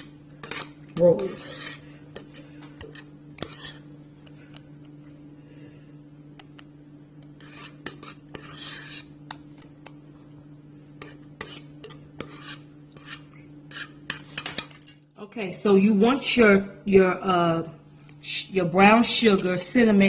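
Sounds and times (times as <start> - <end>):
utensil scraping a bowl: 0.0 - 4.5, 7.2 - 9.7, 11.0 - 15.0.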